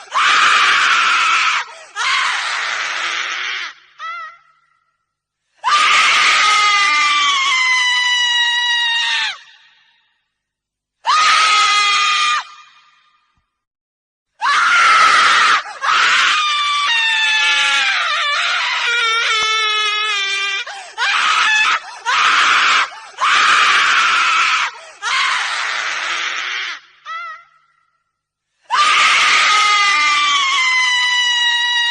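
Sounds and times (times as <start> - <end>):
woman screaming: 5.6 - 9.7, 11.1 - 12.8, 14.4 - 27.7, 28.7 - 31.9.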